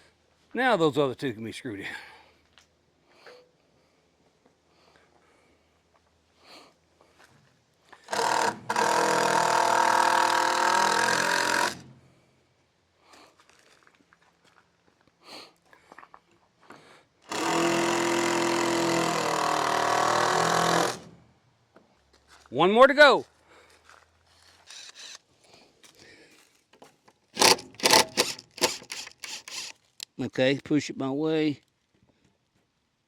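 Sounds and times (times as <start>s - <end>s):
power drill driving screws: 8.0s - 12.0s, 17.3s - 21.2s, 24.7s - 25.2s, 27.4s - 29.8s.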